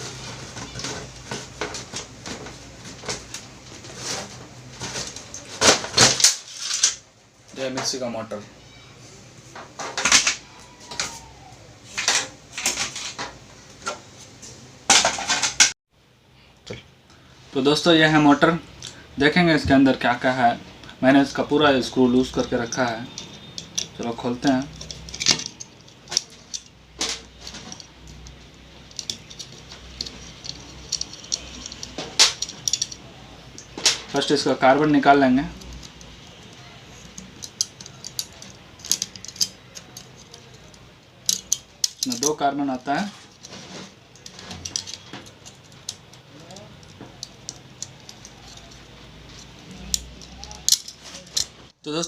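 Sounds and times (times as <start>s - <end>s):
metallic clicks and clatter: 22.4s - 33.0s, 35.6s - 42.4s, 43.0s - 51.7s.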